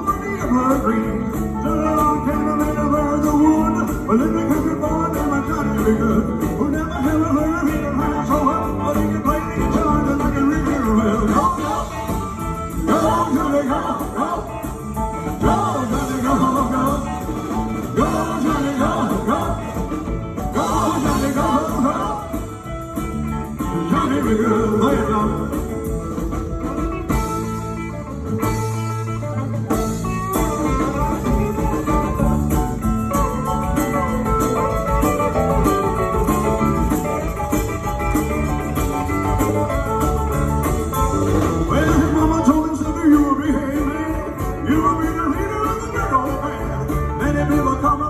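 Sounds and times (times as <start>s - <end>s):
electric guitar: 0.0s - 48.0s
live rock band playing: 0.0s - 48.0s.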